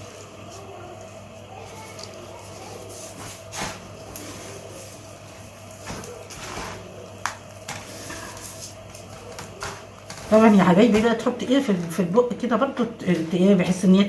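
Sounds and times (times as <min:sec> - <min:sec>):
handling knocks and rustles: 0:01.6 - 0:12.1.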